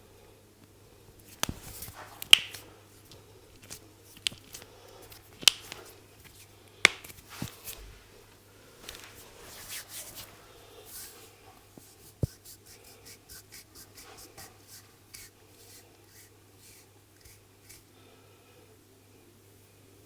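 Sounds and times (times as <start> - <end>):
hands rubbing skin and hair: 1.2 - 17.9
sharp hand snaps: 1.4 - 2.7, 5.4 - 5.8, 6.8 - 7.2.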